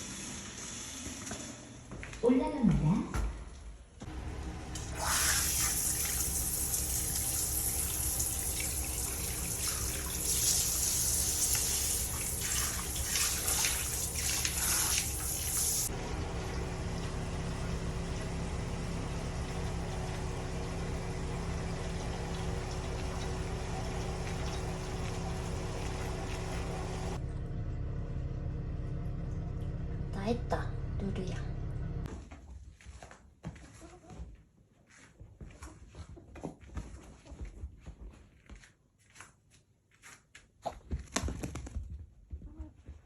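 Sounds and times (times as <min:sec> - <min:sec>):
steady low hum: 0:04.0 - 0:32.1
running water spraying: 0:04.6 - 0:27.2.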